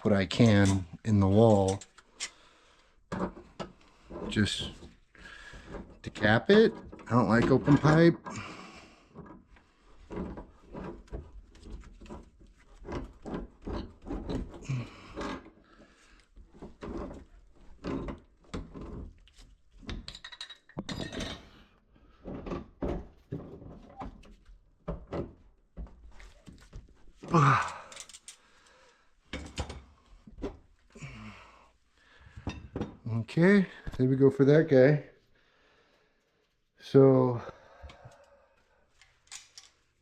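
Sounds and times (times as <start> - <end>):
hand tools knocking and scraping: 3.1 - 21.6.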